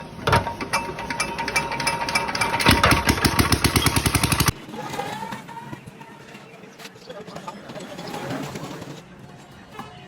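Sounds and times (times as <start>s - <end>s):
diesel engine knocking: 1.3s - 4.5s.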